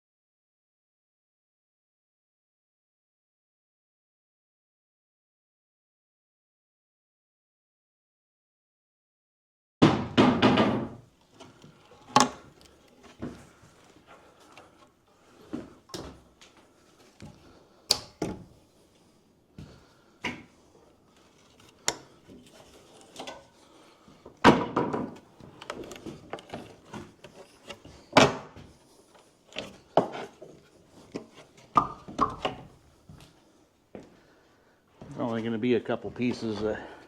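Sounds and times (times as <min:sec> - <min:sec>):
wooden boards knocking and cracking: 0:09.8 - 0:11.0, 0:11.6 - 0:12.5, 0:24.4 - 0:28.6, 0:31.8 - 0:32.7.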